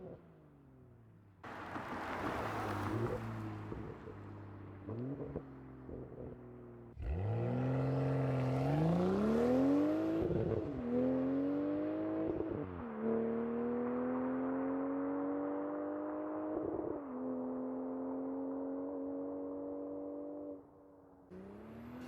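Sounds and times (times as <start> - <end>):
car engine accelerating hard: 7.0 - 12.4, 21.3 - 22.0.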